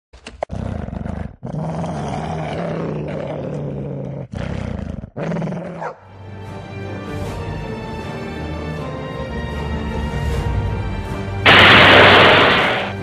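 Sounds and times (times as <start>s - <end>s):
creature growling roars: 0.5s - 5.8s
music: 5.9s - 13.0s.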